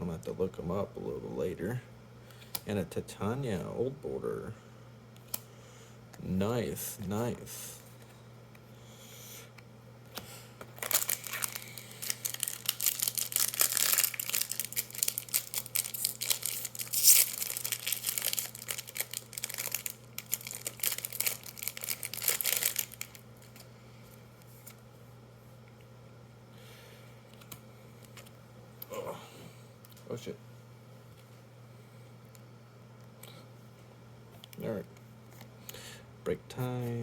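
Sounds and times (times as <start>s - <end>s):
foil wrapper tearing and crinkling: 10.7s - 23.7s.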